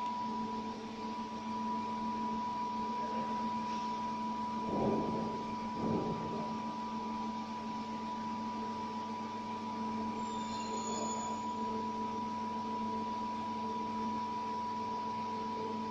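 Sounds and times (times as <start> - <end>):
electrical machine hum: 0.0 - 15.9
faint short high tone: 10.2 - 11.7.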